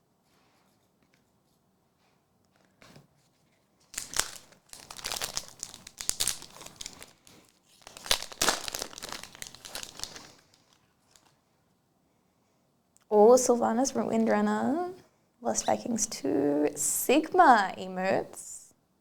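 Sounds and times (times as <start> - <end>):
wrapper tearing and crinkling: 3.9 - 11.4.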